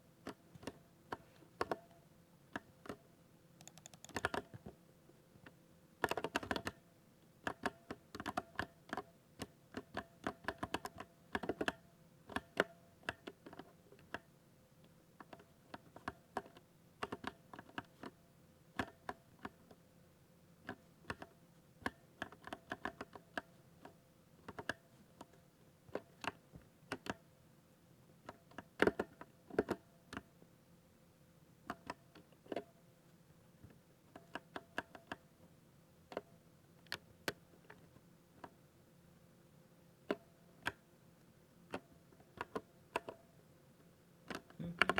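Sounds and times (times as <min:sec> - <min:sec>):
mechanical keyboard typing: 0:03.6 - 0:04.5.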